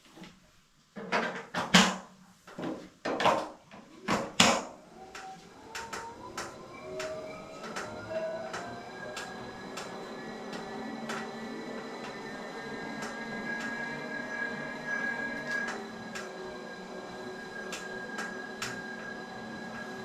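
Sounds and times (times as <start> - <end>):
whine rising in pitch: 4.7 - 20.0.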